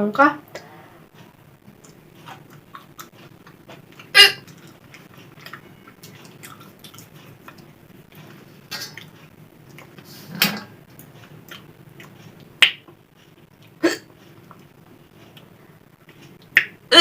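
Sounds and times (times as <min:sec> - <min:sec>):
faint chewing: 0:01.1 - 0:10.2, 0:10.8 - 0:16.7
woman hiccupping: 0:02.6 - 0:04.8, 0:13.7 - 0:14.2, 0:16.6 - 0:17.0.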